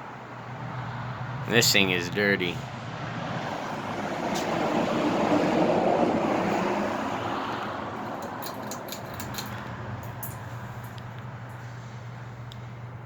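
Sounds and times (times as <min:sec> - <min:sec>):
passing vehicle road noise: 0:00.0 - 0:13.0
steady low hum: 0:06.8 - 0:13.0.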